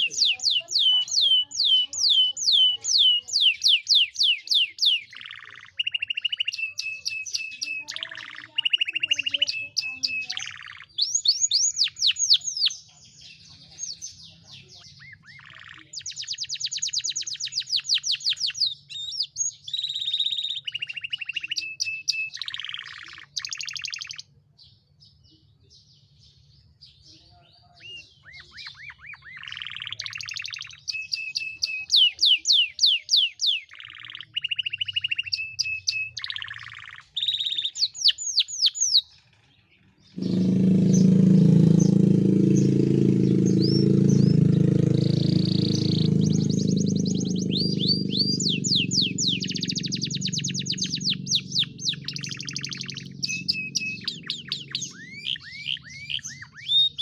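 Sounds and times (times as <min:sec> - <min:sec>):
canary singing: 0:00.0 - 0:25.3, 0:25.9 - 0:57.0
faint high chirps: 0:40.0 - 0:57.0
low rumbling: 0:40.1 - 0:55.9.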